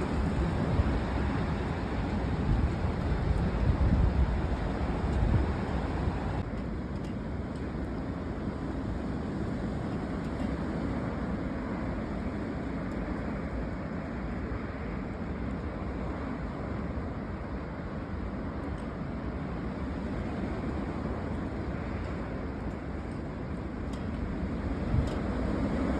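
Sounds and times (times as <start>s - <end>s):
strong wind rushing: 0.0s - 6.5s.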